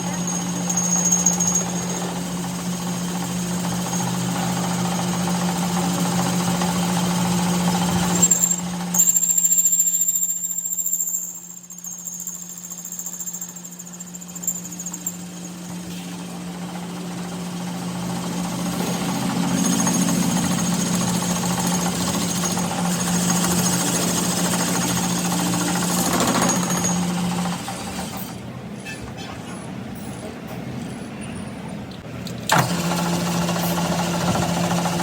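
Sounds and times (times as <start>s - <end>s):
machine humming: 14.2s - 28.1s.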